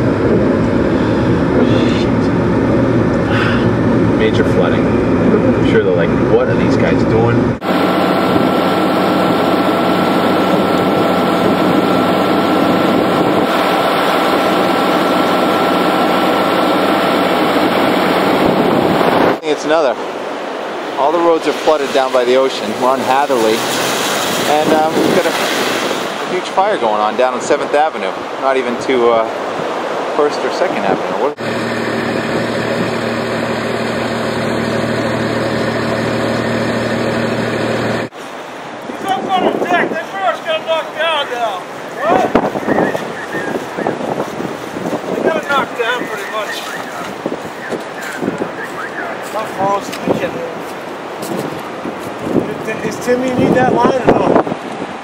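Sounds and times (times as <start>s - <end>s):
engine running steadily: 0.0s - 20.0s, 31.2s - 39.2s
loud even rush: 7.6s - 27.5s
engine idling: 31.4s - 38.1s.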